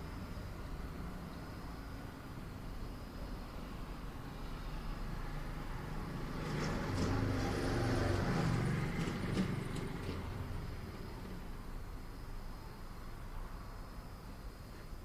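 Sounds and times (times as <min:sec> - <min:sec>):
vehicle passing by: 0:03.6 - 0:12.0.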